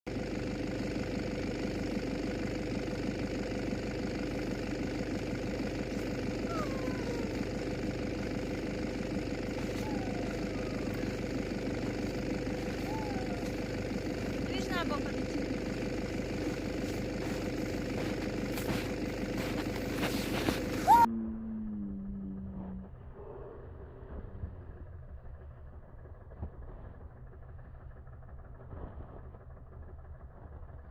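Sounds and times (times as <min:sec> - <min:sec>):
engine idling: 0:00.1 - 0:30.9
short falling whistles: 0:20.8 - 0:21.1.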